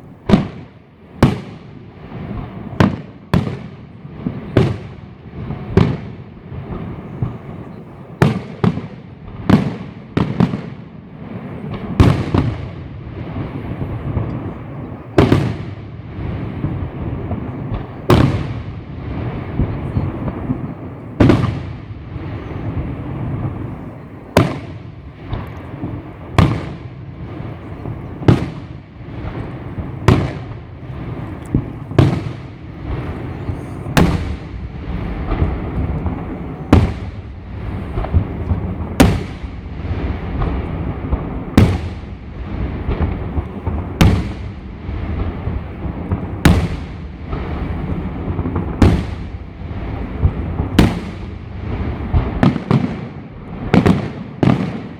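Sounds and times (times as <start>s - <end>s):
firework bangs echoing: 0.0s - 54.9s
rumble of many fireworks: 0.0s - 54.9s.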